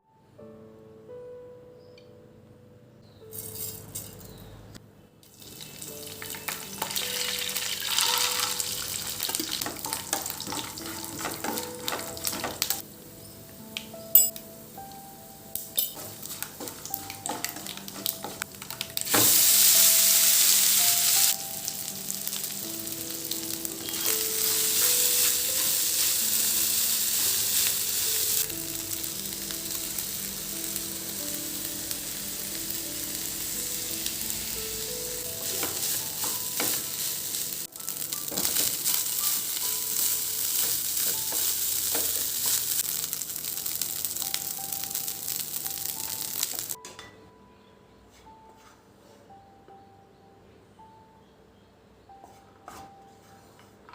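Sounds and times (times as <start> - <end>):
food sizzling in hot oil: 5.2 - 12.8, 15.9 - 46.8.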